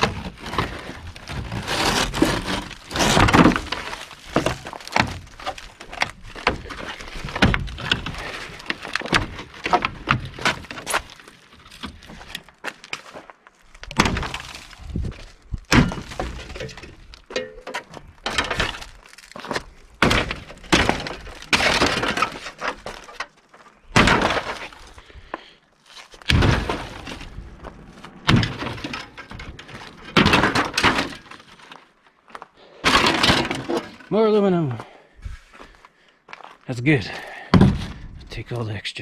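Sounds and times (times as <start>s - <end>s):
scrap metal crashing and rattling: 20.0s - 23.2s, 26.2s - 27.4s, 28.2s - 31.6s, 32.8s - 34.0s
light debris clatter: 26.0s - 34.2s.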